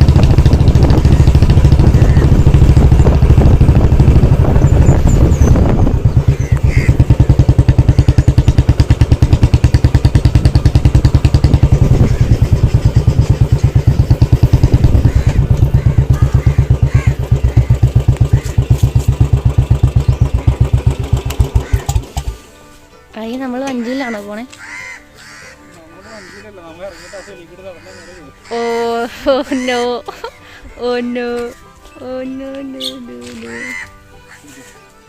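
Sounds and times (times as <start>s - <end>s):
small engine thumping: 0.0s - 22.4s.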